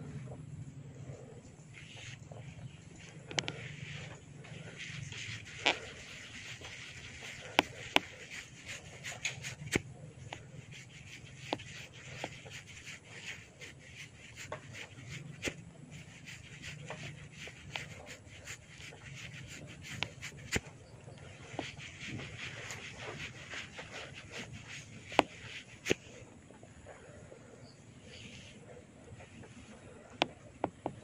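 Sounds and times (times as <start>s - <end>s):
hair rubbing: 1.7s - 26.2s.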